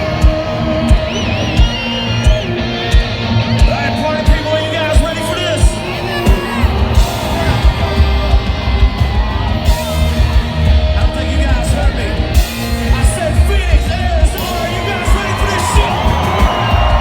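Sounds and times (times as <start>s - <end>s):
live rock band playing: 0.0s - 17.0s.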